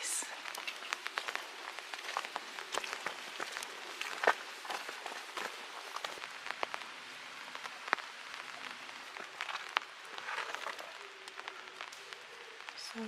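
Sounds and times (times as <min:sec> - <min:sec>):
footsteps crunching dry leaves: 0:00.3 - 0:06.2.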